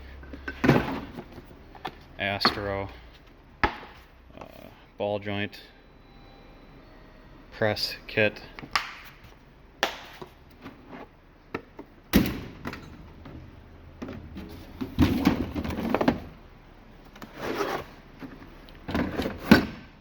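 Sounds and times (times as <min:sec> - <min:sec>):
tools clunking and rattling: 0:00.2 - 0:02.9, 0:11.5 - 0:16.4.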